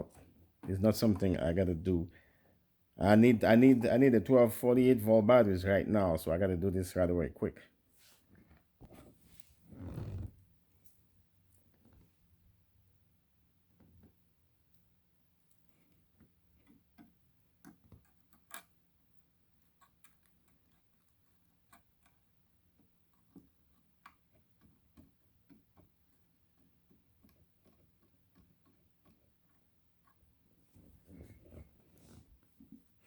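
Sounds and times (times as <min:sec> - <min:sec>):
light clicks and taps of soldering work: 0:15.4 - 0:18.8, 0:19.5 - 0:30.4.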